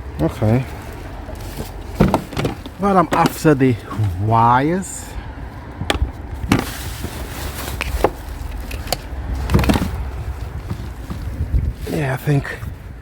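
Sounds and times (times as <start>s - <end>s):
scrap metal knocks and clanks: 1.6s - 3.4s.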